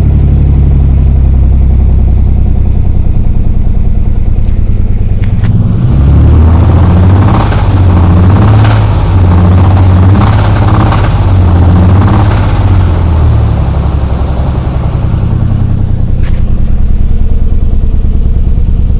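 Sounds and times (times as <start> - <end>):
car engine revving and idling: 0.0 - 18.9
engine knocking: 0.0 - 18.9.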